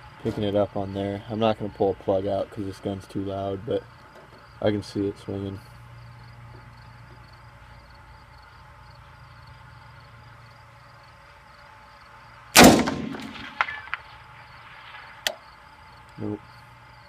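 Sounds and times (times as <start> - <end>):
rifle shot with echo: 12.6 - 14.0.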